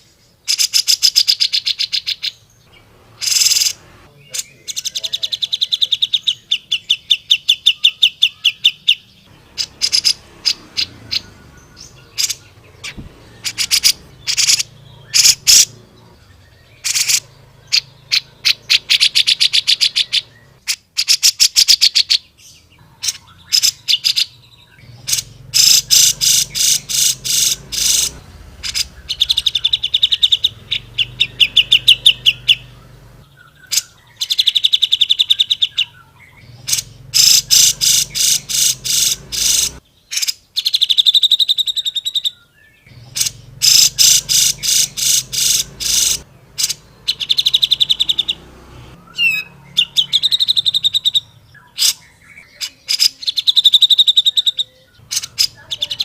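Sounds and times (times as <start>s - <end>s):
bird sharp chirps: 0.0s - 56.0s
bird rattling trills: 3.2s - 3.8s, 9.5s - 15.8s, 25.0s - 33.2s, 36.6s - 39.8s, 43.1s - 48.4s.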